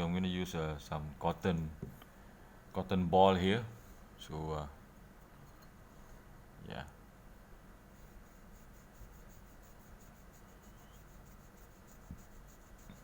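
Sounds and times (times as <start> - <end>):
cotton ball scratchy wiping: 7.9 - 13.0.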